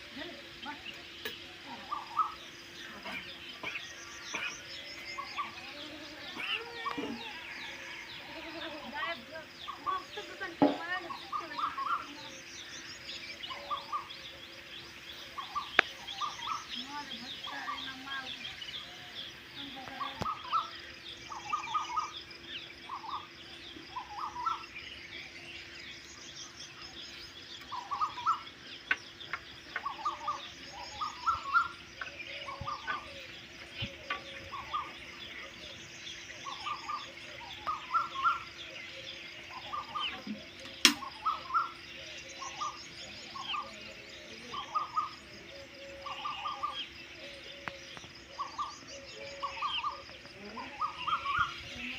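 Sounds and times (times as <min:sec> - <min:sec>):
many birds chirping: 0:00.0 - 0:51.9
sharp click: 0:40.6 - 0:41.1.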